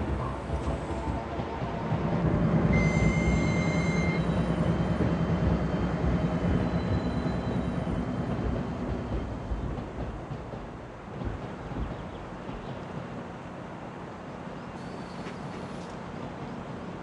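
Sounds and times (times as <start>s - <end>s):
train rumbling on rails: 0.0s - 17.0s
brief high tone: 2.7s - 4.4s.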